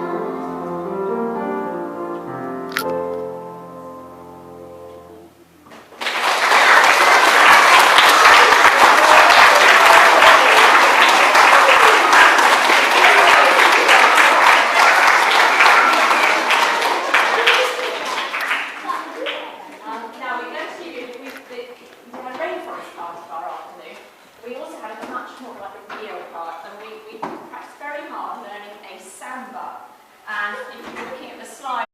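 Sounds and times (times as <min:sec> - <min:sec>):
audience applause: 0:05.9 - 0:19.6
children's choir singing: 0:07.3 - 0:19.2.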